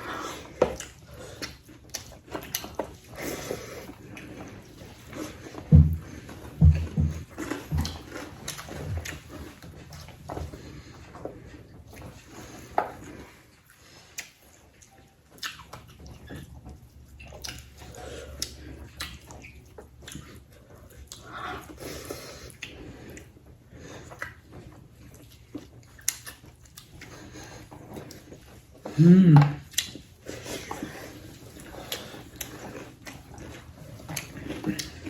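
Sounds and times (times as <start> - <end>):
chewing and mouth smacks: 0.0 - 35.0
low steady hum: 0.0 - 35.0.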